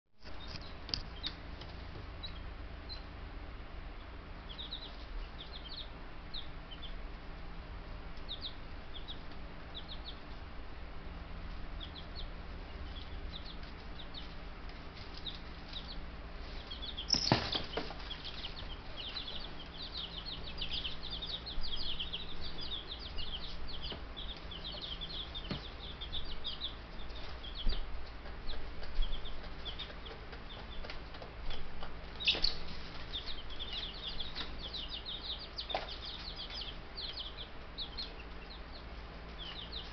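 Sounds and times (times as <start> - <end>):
chicks peeping: 0.2 - 39.9
steady low hum: 0.2 - 39.9.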